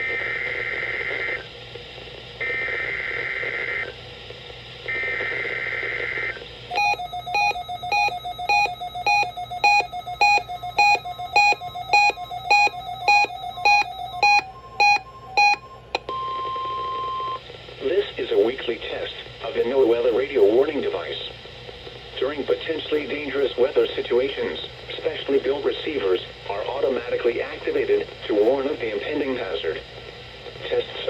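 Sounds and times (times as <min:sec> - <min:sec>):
steady electronic tone: 0:06.7 - 0:16.1
electronic beeps: 0:06.7 - 0:17.4.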